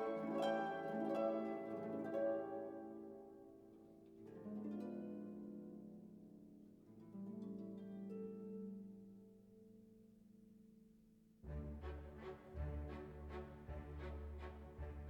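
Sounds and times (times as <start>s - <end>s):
soft plucked harp music: 0.0s - 10.1s.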